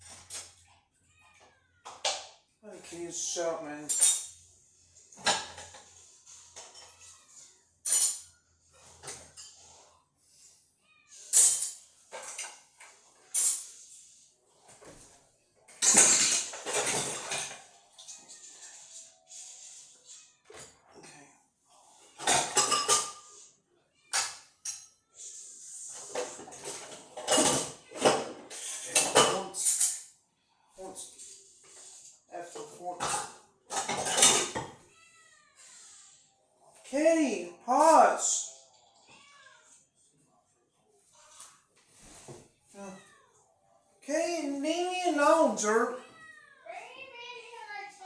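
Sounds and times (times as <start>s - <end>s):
dishes clinking: 3.9s - 4.4s, 5.1s - 7.2s, 7.8s - 9.9s, 11.3s - 13.9s, 15.7s - 18.4s, 22.0s - 23.4s, 25.9s - 30.1s, 32.6s - 34.8s
cat meowing faintly: 34.8s - 36.3s, 42.8s - 43.6s.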